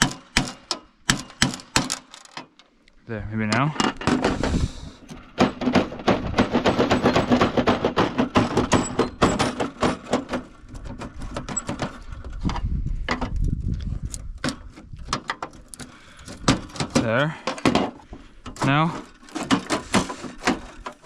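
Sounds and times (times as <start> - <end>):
hand tool knocking on rivets: 5.4 - 10.5.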